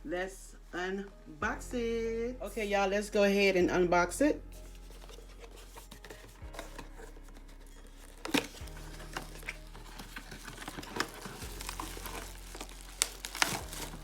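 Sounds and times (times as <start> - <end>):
faint background music: 0.0 - 14.0
cardboard box scraping and tapping: 4.7 - 14.0.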